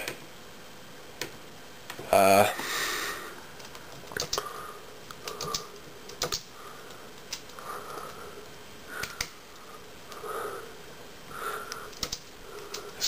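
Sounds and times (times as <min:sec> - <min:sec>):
keyboard keys clicking slowly: 0:03.6 - 0:04.5, 0:05.2 - 0:07.6, 0:09.0 - 0:10.2, 0:11.7 - 0:13.0.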